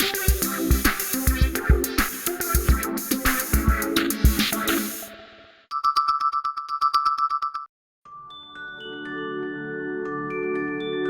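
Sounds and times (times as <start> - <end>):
rapid electronic beeping: 0.0 - 5.1.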